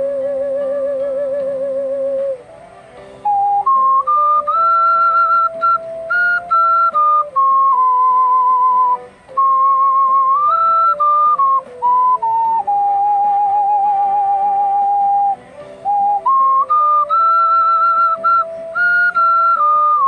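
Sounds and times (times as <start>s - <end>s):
ocarina melody: 0.0s - 20.0s.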